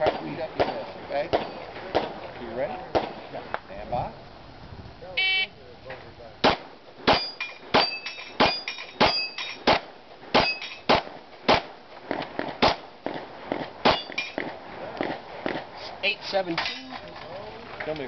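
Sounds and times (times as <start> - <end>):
pistol shots: 0.0 - 2.2, 2.9 - 3.2, 6.4 - 15.7
steel plates ringing: 7.1 - 9.7, 10.4 - 10.9, 13.9 - 14.4.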